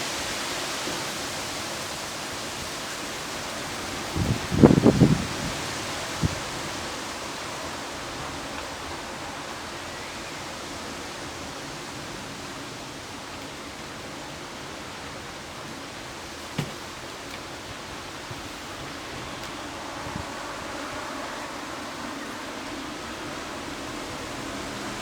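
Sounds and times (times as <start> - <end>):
heavy rain falling: 0.0 - 25.0
short knock: 16.6 - 16.8.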